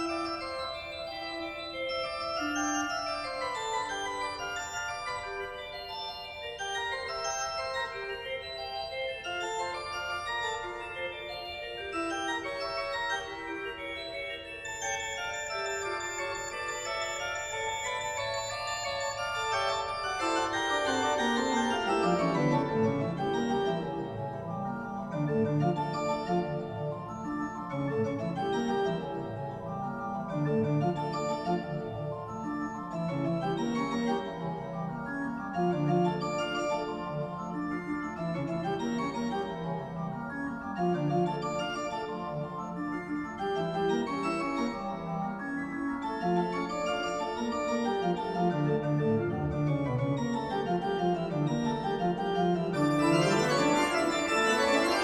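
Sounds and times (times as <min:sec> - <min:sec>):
organ-like keyboard music: 0:13.9 - 0:29.6, 0:38.1 - 0:55.0
keyboard chords with melody: 0:46.3 - 0:55.0.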